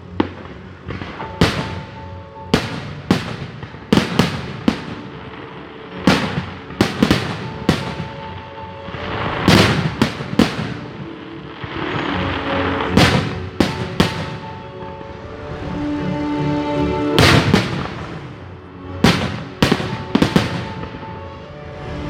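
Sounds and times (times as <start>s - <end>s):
fireworks bangs with echo: 0.0s - 15.0s, 17.1s - 21.4s.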